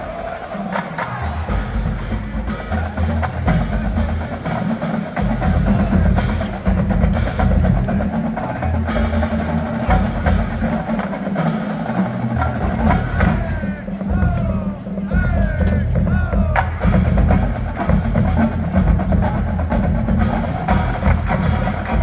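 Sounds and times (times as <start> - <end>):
marching band playing: 0.0 - 22.0.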